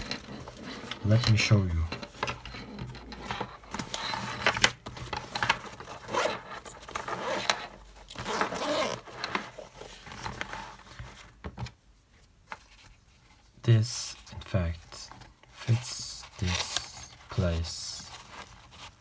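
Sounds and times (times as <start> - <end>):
pouch scraping and rustling: 2.6 - 11.3
zipper being pulled: 8.2 - 9.0.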